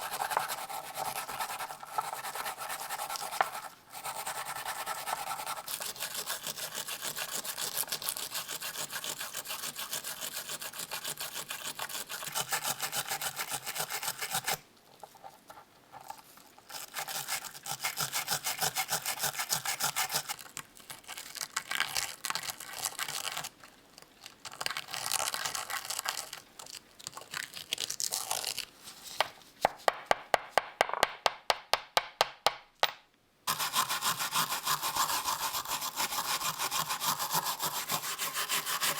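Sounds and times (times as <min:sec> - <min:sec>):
hand saw cutting metal: 0:00.0 - 0:14.6, 0:17.1 - 0:20.2, 0:33.5 - 0:38.9.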